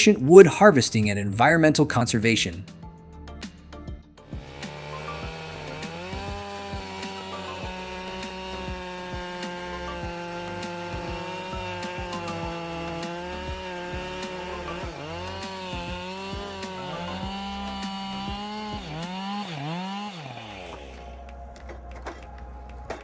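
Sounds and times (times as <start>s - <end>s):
chainsaw engine revving: 4.2s - 21.2s.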